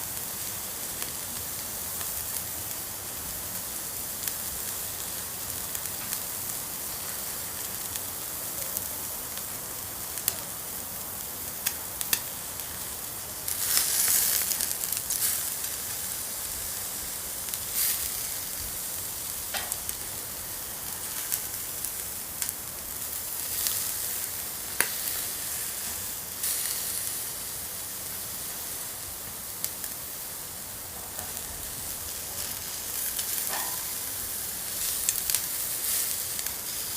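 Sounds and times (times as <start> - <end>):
rain hiss: 0.0 - 36.9.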